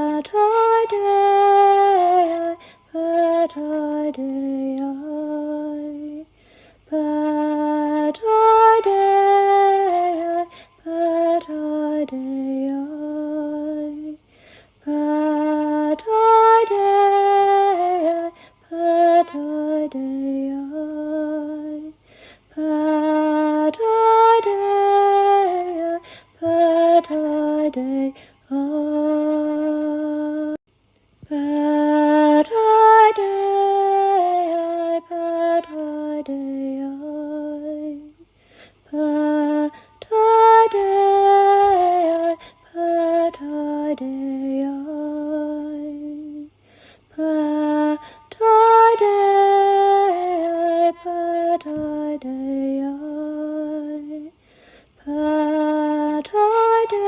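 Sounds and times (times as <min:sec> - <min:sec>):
woman singing wordless chant: 0:00.0 - 0:30.6, 0:31.2 - 0:57.0
singer breathing: 0:02.6 - 0:02.9, 0:06.3 - 0:06.9, 0:10.5 - 0:10.8, 0:14.2 - 0:14.8, 0:18.4 - 0:18.6, 0:22.0 - 0:22.5, 0:26.0 - 0:26.4, 0:38.3 - 0:38.8, 0:46.5 - 0:47.1, 0:54.4 - 0:55.0.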